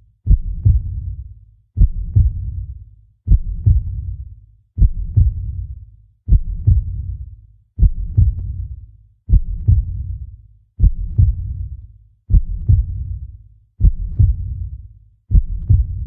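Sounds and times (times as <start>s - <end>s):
deep heartbeat thumps: 0.2s - 1.2s, 1.8s - 2.7s, 3.3s - 4.2s, 4.8s - 5.7s, 6.3s - 7.2s, 7.8s - 8.7s, 9.3s - 10.2s, 10.8s - 13.2s, 13.8s - 16.0s.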